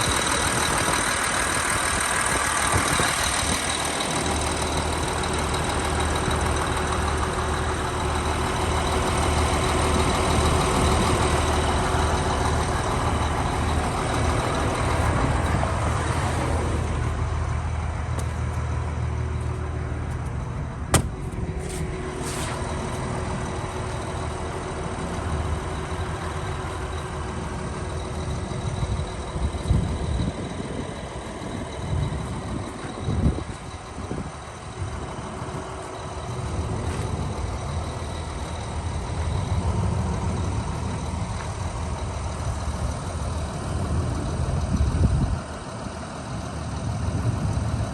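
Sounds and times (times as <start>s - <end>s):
excavator diesel engine running: 0.0s - 47.9s
knocks: 20.9s - 21.4s.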